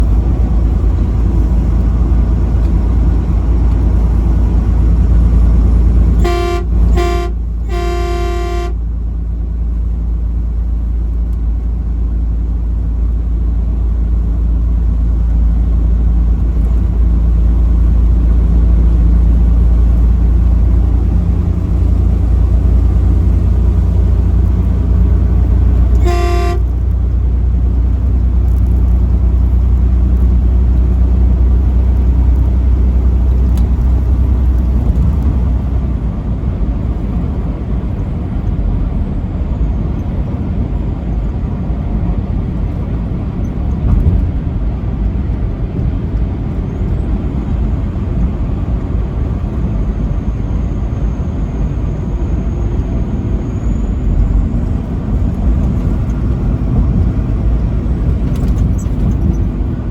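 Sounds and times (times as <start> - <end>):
road noise: 0.0 - 59.9
truck engine rumble: 0.0 - 59.9
truck horn honking: 6.0 - 9.0, 25.8 - 27.0.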